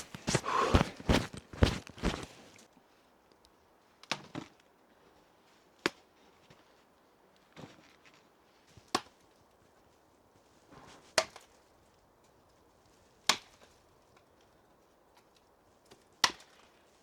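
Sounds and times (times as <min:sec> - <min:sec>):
brief rustle: 0:00.0 - 0:02.6
sharp chopping blows: 0:00.0 - 0:02.6.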